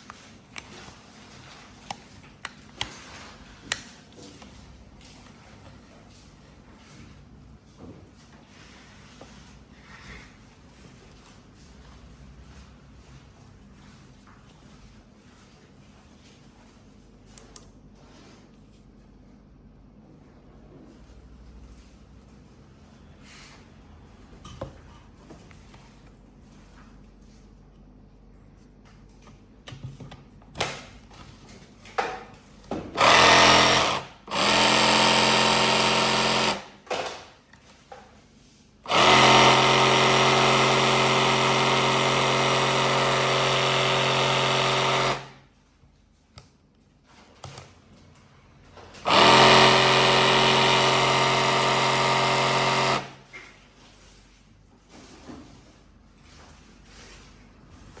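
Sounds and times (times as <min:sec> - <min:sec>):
jigsaw buzzing whir: 0:33.0 - 0:36.8, 0:38.9 - 0:45.4, 0:49.0 - 0:53.2.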